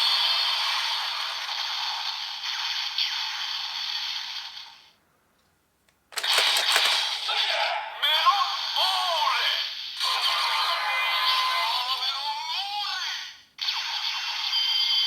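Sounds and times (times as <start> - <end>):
toy sharp clicks: 6.1 - 7.2.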